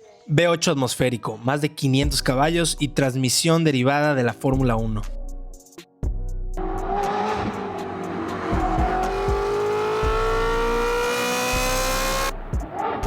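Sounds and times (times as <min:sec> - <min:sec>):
music beat: 0:05.6 - 0:12.8
sports car engine accelerating: 0:06.6 - 0:13.0.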